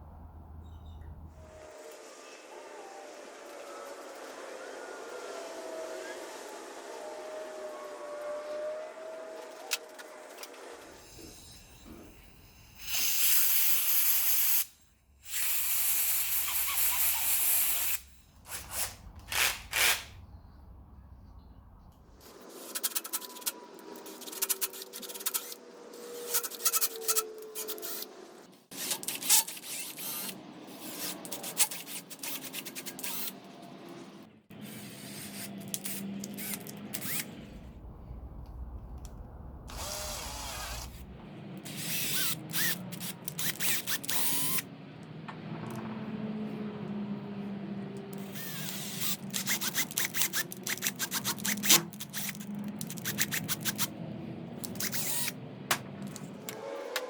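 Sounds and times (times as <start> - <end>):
short low rumble: 37.4 - 41.4.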